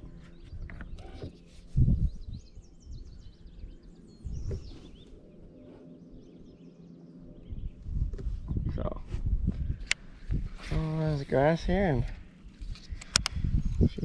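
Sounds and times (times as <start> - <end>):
small birds chirping: 0.0 - 9.0, 9.6 - 14.0
dull low thump: 4.4 - 4.8.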